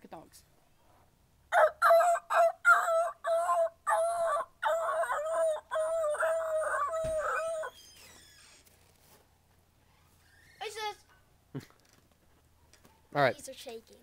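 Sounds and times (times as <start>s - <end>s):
person making howl-like calls: 2.1s - 7.8s
person imitating barking dogs: 2.5s - 7.7s.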